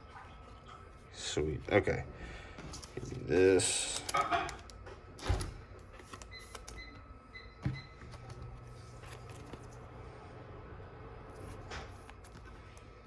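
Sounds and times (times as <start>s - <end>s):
cards tapping and sliding: 2.6s - 6.8s, 7.6s - 9.9s, 11.3s - 12.9s.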